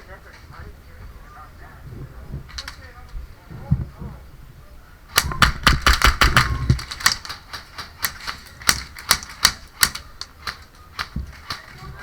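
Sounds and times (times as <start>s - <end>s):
airsoft gunfire: 5.1s - 12.0s.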